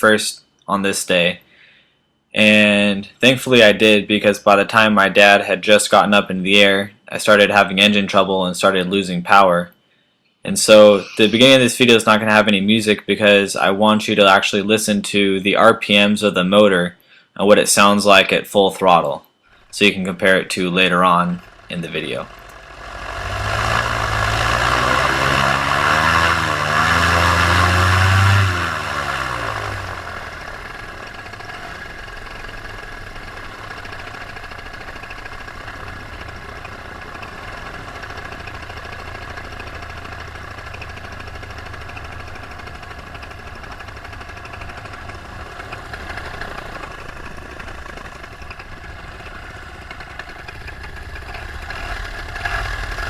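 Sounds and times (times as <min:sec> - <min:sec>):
paramotor engine running: 0:19.6 - 0:53.0.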